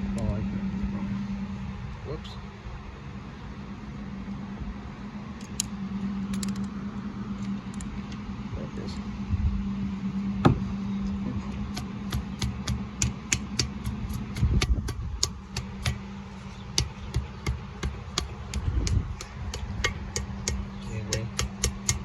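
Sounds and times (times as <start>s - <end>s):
steady hum: 0.0s - 22.0s
sharp clicks from hand tools: 18.2s - 22.0s.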